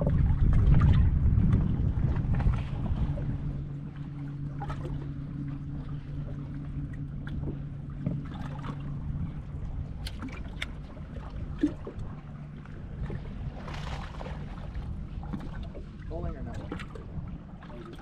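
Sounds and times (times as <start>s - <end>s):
boat motor humming: 0.0s - 18.0s
light wind noise: 0.0s - 18.0s.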